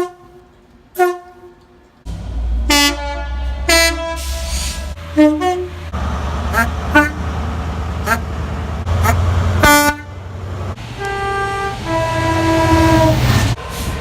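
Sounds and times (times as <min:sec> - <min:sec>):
train air horn blasts: 0:00.0 - 0:01.7, 0:02.6 - 0:05.8, 0:06.5 - 0:07.2, 0:09.0 - 0:10.2, 0:11.0 - 0:13.6
low engine rumble: 0:00.2 - 0:14.0.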